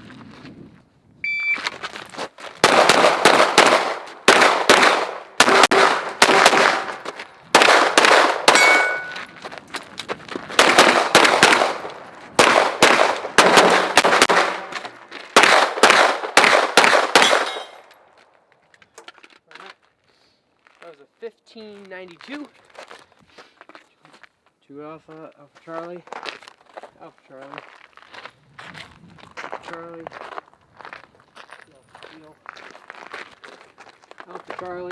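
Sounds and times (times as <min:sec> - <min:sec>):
shot timer beep: 0:01.2 - 0:01.7, 0:08.5 - 0:09.2
pistol shots: 0:02.6 - 0:09.3, 0:10.6 - 0:17.9.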